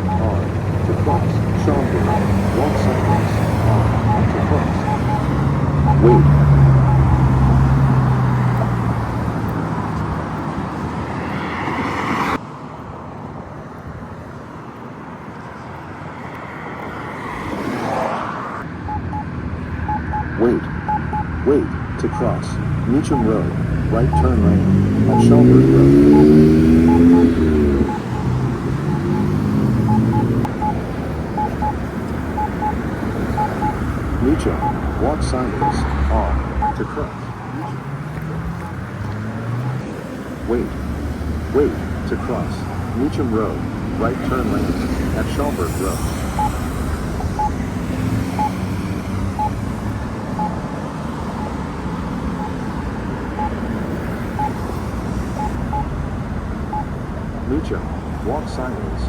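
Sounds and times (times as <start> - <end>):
pedestrian signal beeps: 0.0 - 9.3, 18.8 - 39.9, 40.5 - 40.8, 41.6 - 56.0, 56.7 - 57.0
traffic noise: 0.0 - 59.0.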